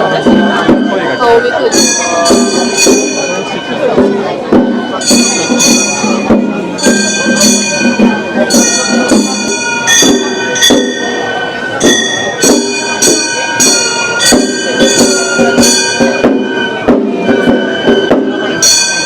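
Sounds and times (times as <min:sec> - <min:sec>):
drum: 0:00.0 - 0:19.0
high bamboo flute melody: 0:00.0 - 0:19.0
brass hand gongs clanging: 0:01.8 - 0:19.0.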